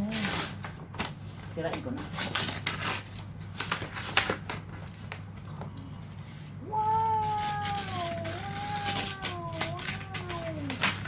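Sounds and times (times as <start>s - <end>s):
packaging tearing and rustling: 2.0s - 5.2s, 6.9s - 11.0s.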